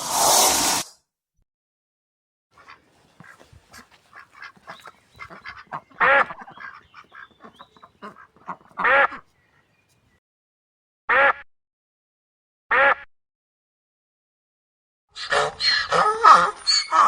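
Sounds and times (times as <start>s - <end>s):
waterfowl calling: 2.6s - 10.1s.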